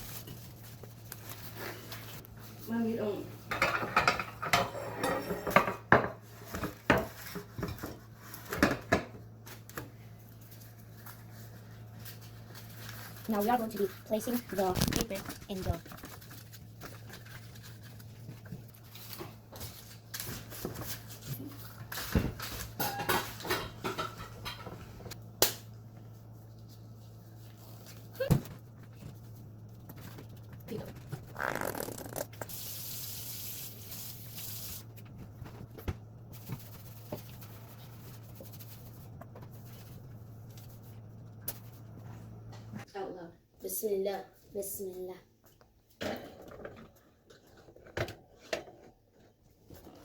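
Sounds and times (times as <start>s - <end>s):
steady low hum: 0.0s - 43.0s
paper cupcake liners rustling: 10.3s - 22.1s.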